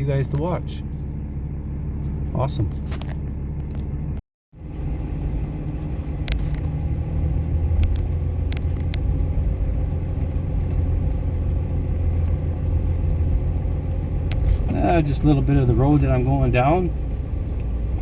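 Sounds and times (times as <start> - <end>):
truck engine and tyres rumbling: 0.0 - 18.0
sharp clicks and rattles: 7.6 - 18.0.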